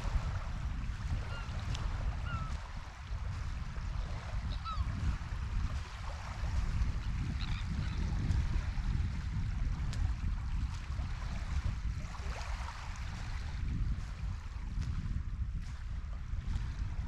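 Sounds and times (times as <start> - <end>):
wind rumble on microphone: 0.0 - 17.0
seagull calls: 2.2 - 2.6, 4.5 - 4.9.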